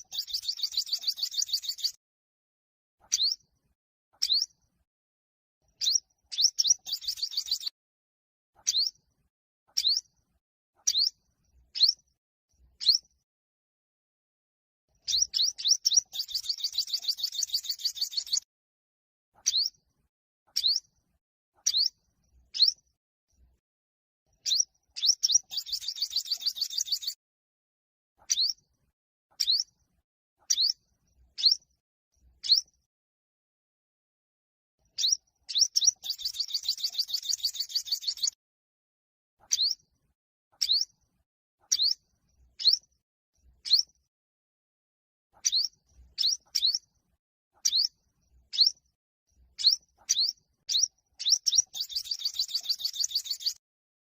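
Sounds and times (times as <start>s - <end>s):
bird rapid trill: 0.0s - 2.0s, 5.8s - 7.7s, 15.1s - 18.4s, 21.6s - 21.9s, 24.4s - 27.2s, 32.4s - 32.7s, 35.0s - 38.4s, 39.5s - 39.8s, 40.6s - 40.9s, 42.6s - 42.8s, 45.4s - 46.8s, 48.5s - 48.8s, 49.6s - 53.6s
sunbird chirping song: 0.0s - 2.0s, 3.0s - 3.5s, 4.1s - 4.6s, 5.7s - 7.8s, 8.6s - 9.1s, 9.7s - 10.2s, 10.8s - 13.2s, 15.0s - 18.5s, 19.4s - 19.9s, 20.5s - 20.9s, 21.6s - 22.9s, 24.3s - 27.2s, 28.2s - 28.7s, 29.3s - 29.8s, 30.4s - 32.9s, 34.8s - 38.4s, 39.4s - 39.9s, 40.5s - 41.0s, 41.7s - 43.0s, 43.6s - 44.0s, 45.4s - 46.9s, 47.6s - 53.6s.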